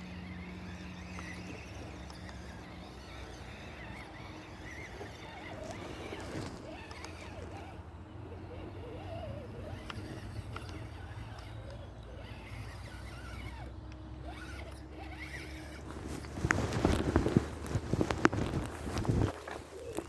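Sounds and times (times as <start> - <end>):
gritty rasping over rough ground: 0.0 - 20.0
small electric motor whirring: 0.0 - 20.0
tyres clicking and crunching on rocks: 0.2 - 7.8.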